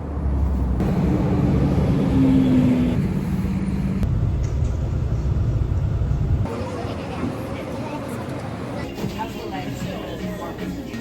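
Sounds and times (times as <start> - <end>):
vehicle running low rumble: 0.0 - 6.5.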